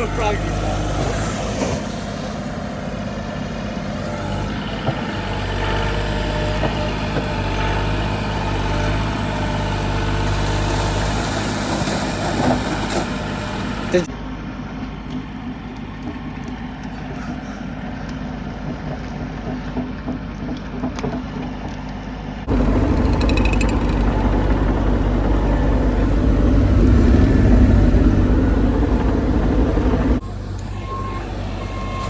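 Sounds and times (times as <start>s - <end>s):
excavator diesel engine running: 2.5s - 14.1s, 22.4s - 32.0s.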